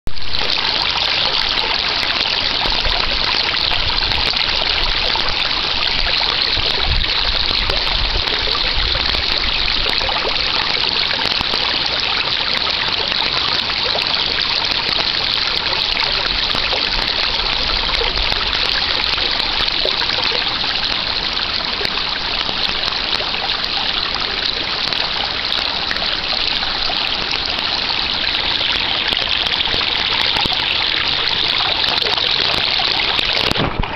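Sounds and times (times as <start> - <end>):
stream rushing over rocks: 0.1 - 33.9.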